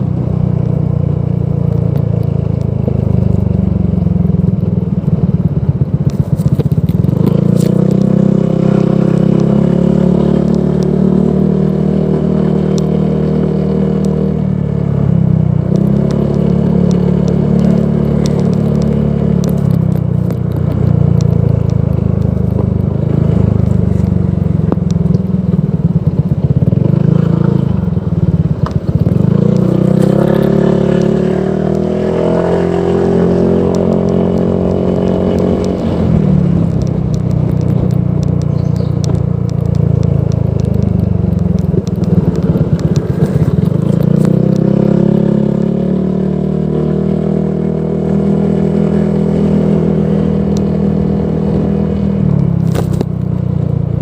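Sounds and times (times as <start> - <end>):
scooter engine running: 0.0 - 54.0.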